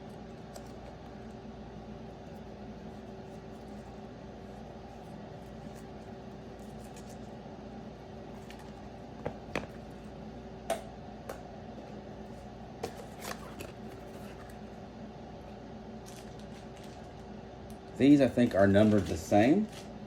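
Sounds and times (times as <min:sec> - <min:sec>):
steady background hum: 0:00.0 - 0:20.0.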